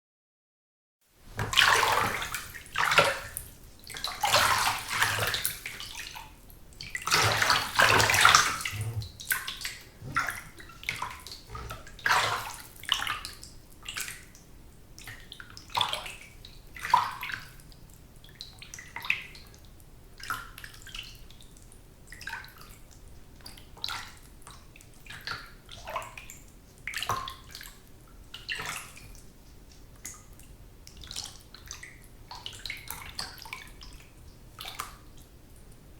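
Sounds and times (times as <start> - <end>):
water splashing in bathtub: 1.4 - 6.2, 6.9 - 13.3.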